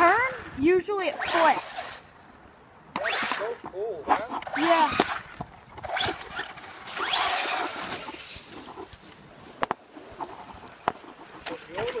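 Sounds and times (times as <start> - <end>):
rc car electric motor whine: 0.0 - 2.1, 3.0 - 3.5, 4.3 - 8.9.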